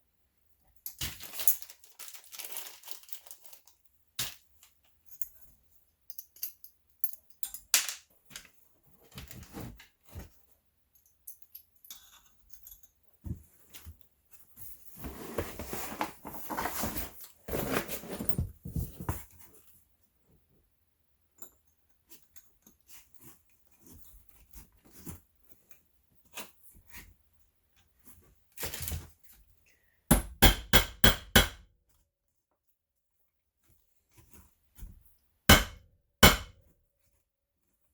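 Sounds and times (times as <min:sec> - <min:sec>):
sharp knocks: 0:35.5 - 0:36.6.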